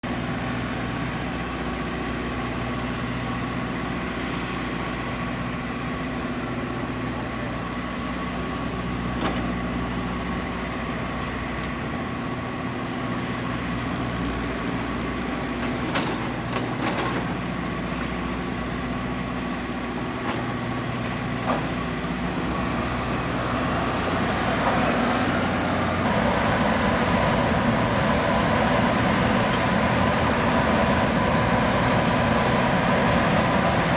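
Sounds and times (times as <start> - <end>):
gas turbines droning: 17.4 - 33.9
high steady whine: 26.0 - 33.9.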